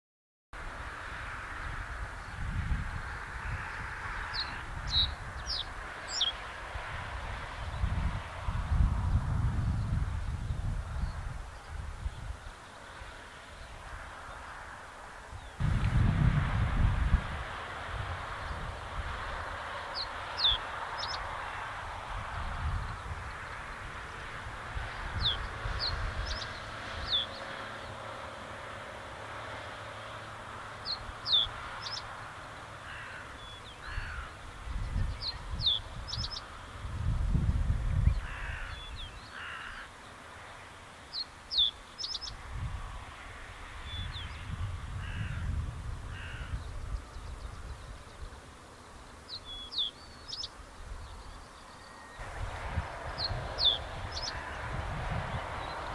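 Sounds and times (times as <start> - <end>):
low rough bird calls: 3.0 - 6.5, 32.8 - 36.5, 37.8 - 40.2, 43.8 - 48.3, 53.1 - 55.9
bird song with ticks: 4.3 - 6.4, 20.0 - 21.2, 25.2 - 28.0, 30.8 - 32.1, 34.8 - 36.5, 41.1 - 42.4, 46.5 - 52.2, 53.2 - 54.5
low gusty rumbles: 6.7 - 12.4, 15.6 - 28.2, 42.4 - 47.5, 52.2 - 55.9.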